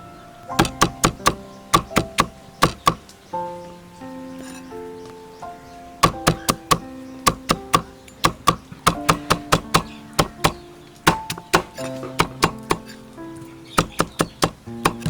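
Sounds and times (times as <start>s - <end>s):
instrumental music with held notes: 0.0s - 15.0s
sharp knocks: 0.5s - 3.1s, 6.0s - 13.0s, 13.8s - 15.0s.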